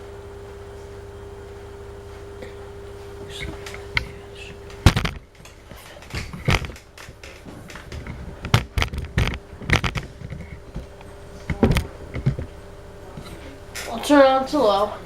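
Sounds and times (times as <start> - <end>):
faint steady hum: 0.0 - 15.0
knocks clicks and scrapes of handling: 3.4 - 12.5.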